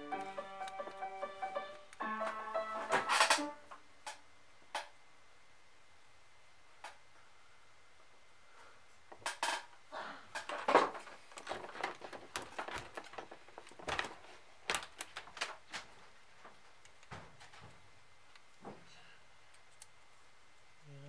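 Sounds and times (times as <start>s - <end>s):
plastic and metal parts clattering: 2.9s - 3.4s, 10.3s - 17.7s.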